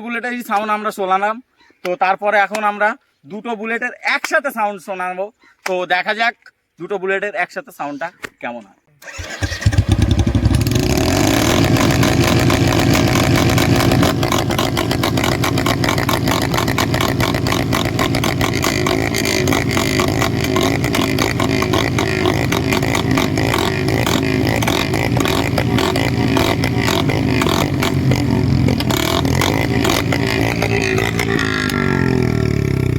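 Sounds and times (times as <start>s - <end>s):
motorcycle engines exhaust beat: 9.7s - 32.9s.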